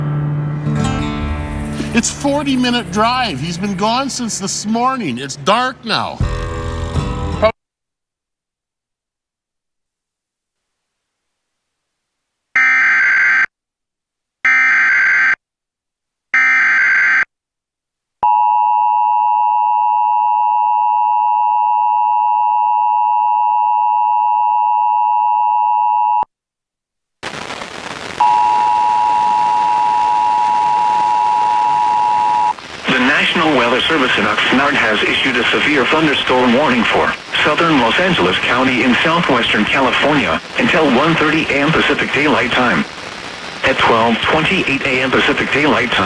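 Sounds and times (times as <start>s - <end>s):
digital data tone bursts: 1.1s - 5.0s
steady hiss: 1.2s - 5.6s, 32.6s - 46.0s.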